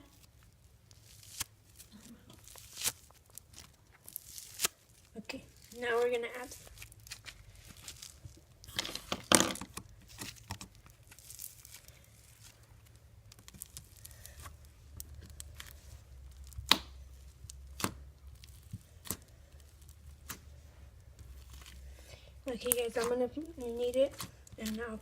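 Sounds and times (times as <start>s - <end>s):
foam beads crackling into slime: 0.0s - 25.0s.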